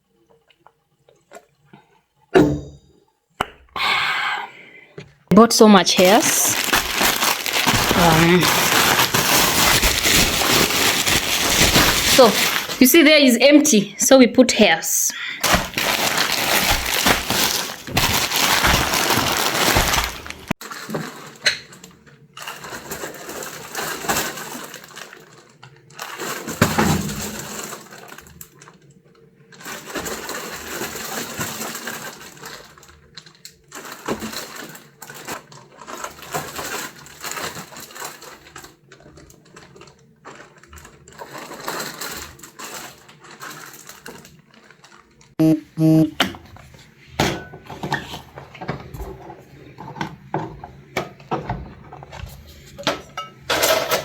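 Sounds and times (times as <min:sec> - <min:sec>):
hair extension packs rustling: 0:05.9 - 0:13.4, 0:15.4 - 0:28.9, 0:29.5 - 0:45.4.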